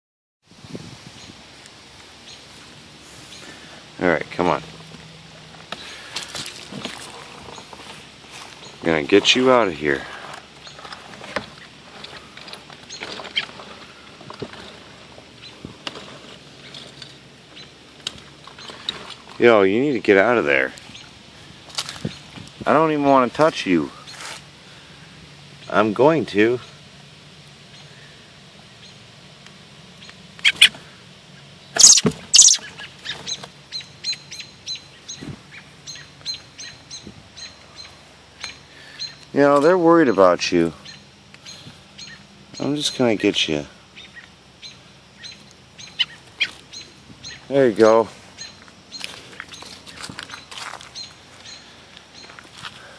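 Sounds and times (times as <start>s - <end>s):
light scratching and rustling: 1.6s - 24.5s, 45.4s - 52.9s
bird chirping: 2.2s - 15.7s, 16.5s - 21.2s, 29.9s - 52.9s.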